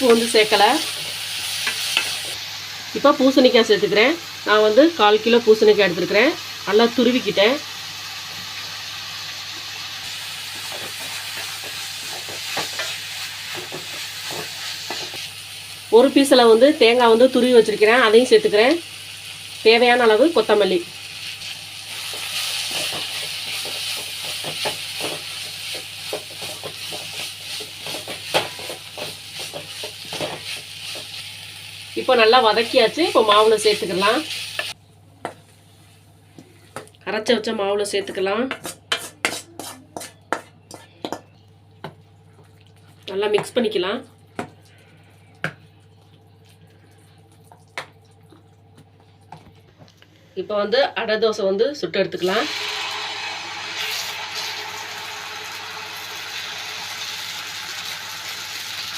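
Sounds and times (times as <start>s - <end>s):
vegetables sizzling in oil: 0.0s - 34.8s, 52.2s - 58.9s
spatula scraping and tapping pan: 22.1s - 31.1s, 38.1s - 42.0s
spoon stirring wet batter: 38.5s - 49.7s.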